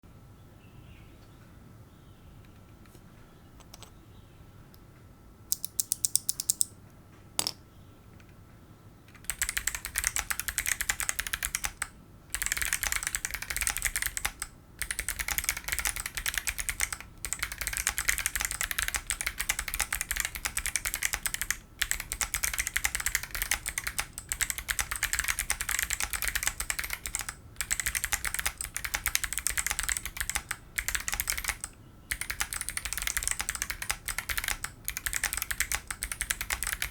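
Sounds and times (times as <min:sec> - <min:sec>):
clicky mechanical keyboard typing: 0:05.5 - 0:06.7, 0:09.1 - 0:36.9.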